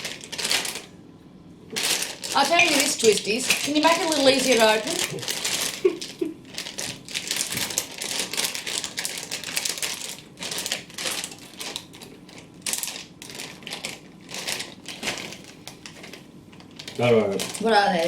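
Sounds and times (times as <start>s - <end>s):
chip packet crinkling and tearing: 0.0s - 0.9s, 1.7s - 18.0s.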